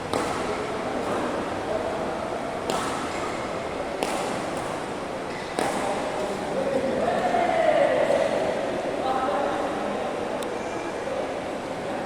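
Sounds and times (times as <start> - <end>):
hubbub in echoing hall: 0.0 - 12.0
badminton racket hitting shuttlecock: 0.1 - 1.3, 2.6 - 4.9.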